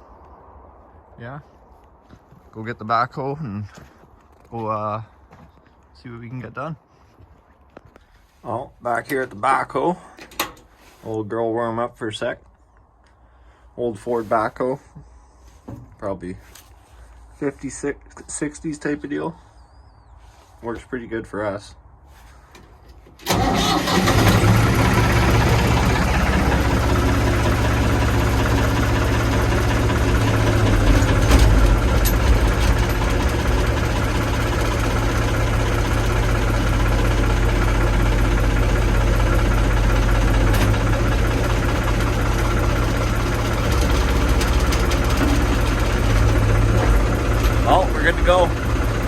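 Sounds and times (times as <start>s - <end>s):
backhoe engine starting and idling: 8.2s - 11.1s, 22.3s - 49.0s.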